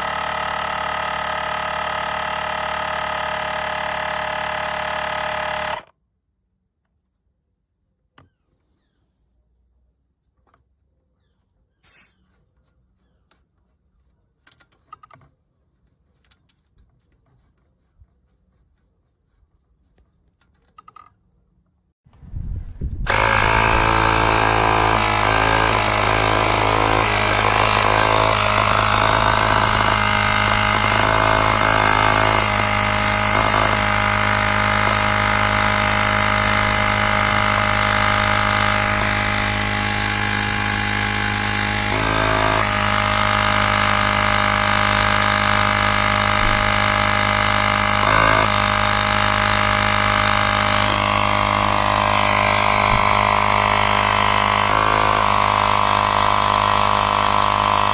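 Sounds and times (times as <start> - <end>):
air compressor humming: 0.0 - 5.9, 22.6 - 57.9.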